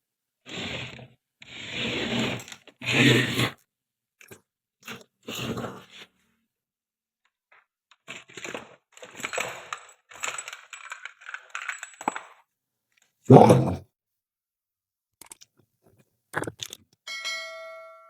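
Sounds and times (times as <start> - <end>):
small hard parts clattering: 7.9 - 12.4.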